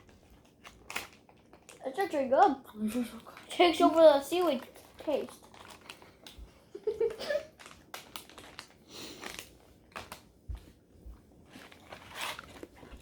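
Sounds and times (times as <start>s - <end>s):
snack wrapper rustling: 0.0s - 2.2s, 2.8s - 10.3s, 11.4s - 13.0s
person chewing candy: 4.6s - 10.2s.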